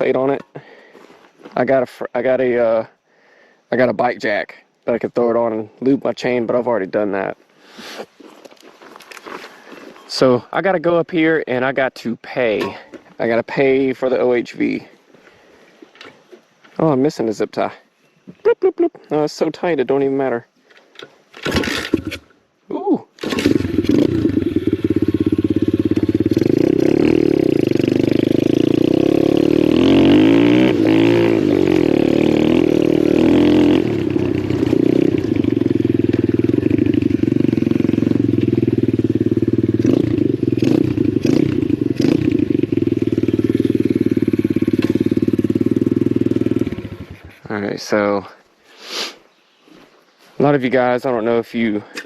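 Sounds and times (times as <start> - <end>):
motorbike engine revving: 23.2 - 47.4.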